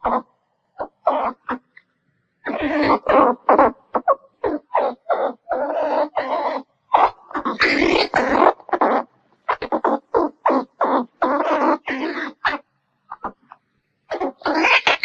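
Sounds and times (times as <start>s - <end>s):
squirrel raspy chirps: 0.0s - 1.8s, 2.4s - 15.0s.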